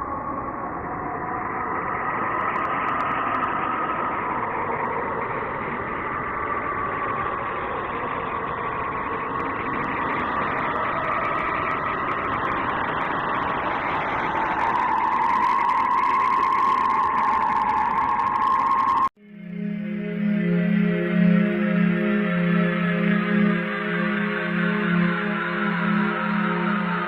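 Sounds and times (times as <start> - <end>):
synthetic space drone: 0.0 - 27.0.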